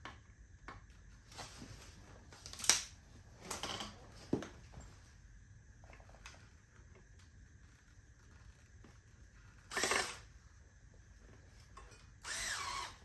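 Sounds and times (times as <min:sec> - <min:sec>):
electric screwdriver whirr: 0:09.7 - 0:10.3, 0:12.2 - 0:13.0.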